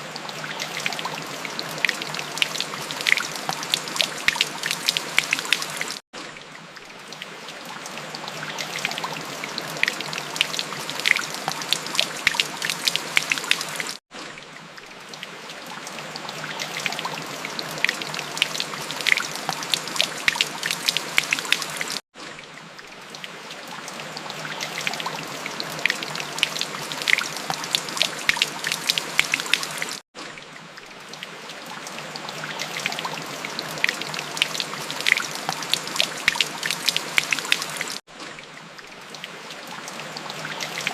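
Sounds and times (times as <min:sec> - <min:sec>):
rain falling: 0:00.0 - 0:06.0, 0:07.1 - 0:14.0, 0:16.1 - 0:22.0, 0:23.2 - 0:30.0, 0:31.9 - 0:38.0.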